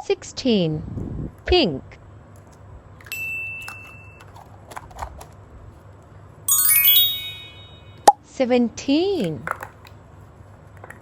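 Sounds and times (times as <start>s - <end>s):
bright ding: 3.1s - 4.2s, 6.5s - 8.1s
descending sparkling chime run: 6.5s - 8.0s.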